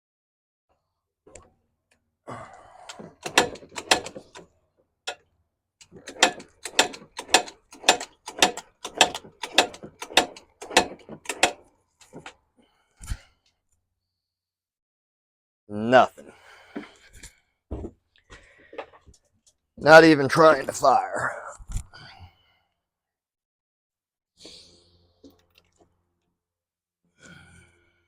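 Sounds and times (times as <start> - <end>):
engine turning over: 2.9 - 4.4, 5.8 - 12.3
kickstarter ratcheting: 2.9 - 4.5, 5.8 - 12.3.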